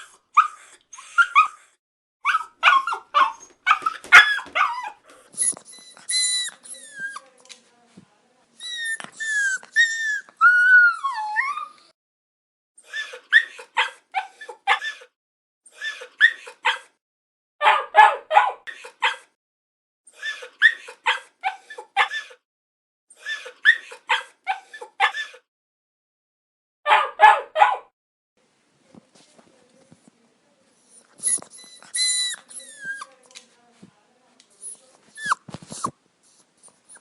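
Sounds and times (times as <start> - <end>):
puppy whining and yipping: 0.0 - 7.2, 8.6 - 11.9, 13.0 - 15.1, 20.2 - 22.4, 23.2 - 25.4, 30.9 - 33.1, 34.6 - 36.0, 36.6 - 37.0.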